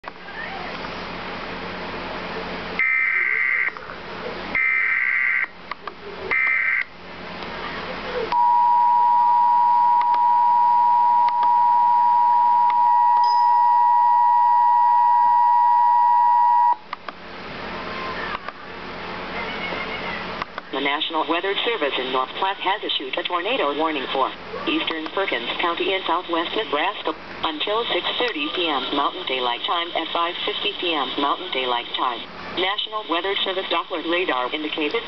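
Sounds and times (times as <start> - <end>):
two-tone attention signal: 8.3 - 16.8.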